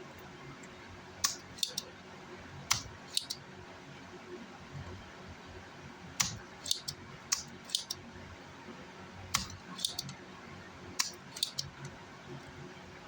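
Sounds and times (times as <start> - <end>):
hand tools clicking on circuit board: 1.2 - 1.9, 2.7 - 3.4, 6.2 - 8.0, 9.3 - 10.2, 11.0 - 12.0.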